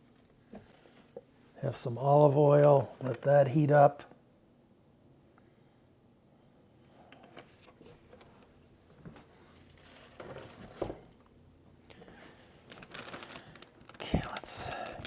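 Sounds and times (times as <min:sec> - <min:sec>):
soft rustling and crinkling: 0:00.0 - 0:02.0, 0:06.9 - 0:15.0.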